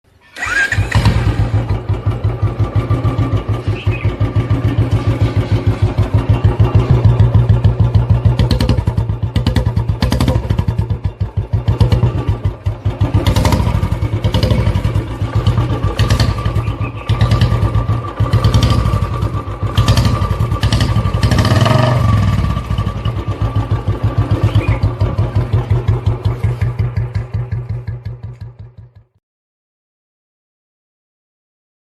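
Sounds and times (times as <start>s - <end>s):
motorcycle engine thumping: 0.9s - 29.1s.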